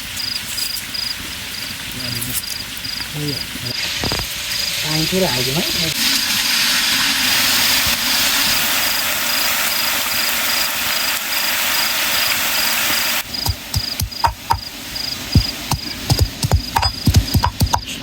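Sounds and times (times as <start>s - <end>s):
dense steady hiss: 0.0s - 18.0s
cricket chirping: 0.2s - 1.2s, 2.0s - 4.6s, 13.2s - 18.0s
knocks and clicks: 13.4s - 14.7s, 15.4s - 17.9s.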